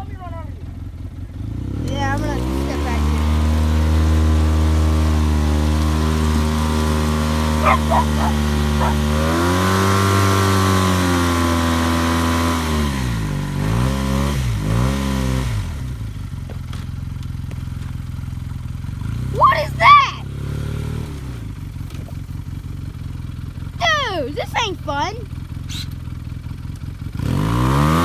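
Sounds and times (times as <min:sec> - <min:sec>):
off-road vehicle engine revving: 0:00.8 - 0:28.0
short high yelps: 0:07.6 - 0:09.4, 0:19.3 - 0:20.2, 0:23.8 - 0:25.0.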